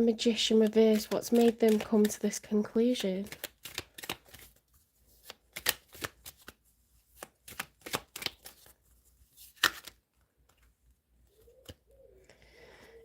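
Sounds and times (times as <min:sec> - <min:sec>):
cards being shuffled: 0:00.5 - 0:10.7.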